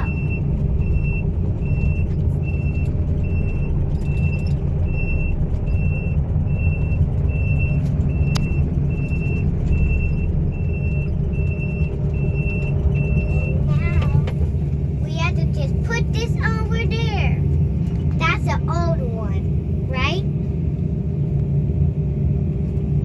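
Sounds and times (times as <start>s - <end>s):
warning alarm beeping: 0.0s - 13.9s
excavator diesel engine running: 0.0s - 23.0s.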